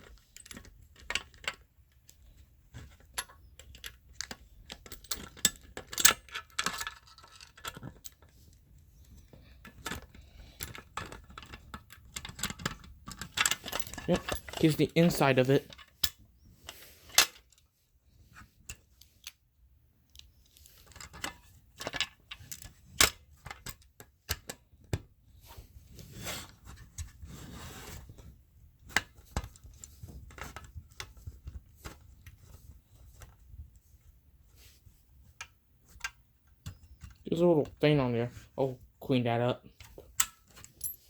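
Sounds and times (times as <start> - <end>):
scraping and rustling: 25.4 - 35.0.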